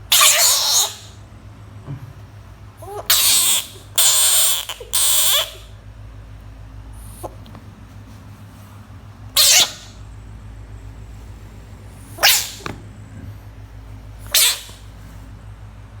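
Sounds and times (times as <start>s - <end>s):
bullfrog hiss-like calls: 0.1s - 1.2s, 3.1s - 5.7s, 9.4s - 10.0s, 12.1s - 12.6s, 14.3s - 14.8s.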